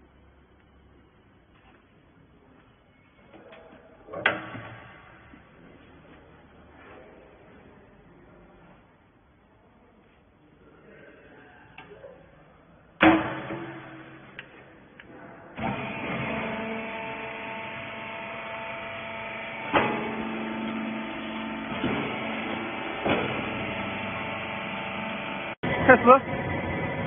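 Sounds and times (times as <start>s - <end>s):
loud metallic bang: 13.0s - 14.4s
hydraulic power unit humming: 13.0s - 27.0s.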